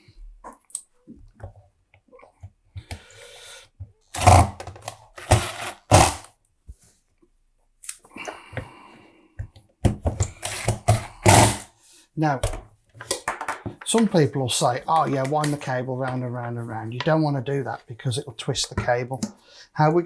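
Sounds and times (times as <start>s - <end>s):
plastic vacuum cleaner clattering: 12.4s - 17.1s.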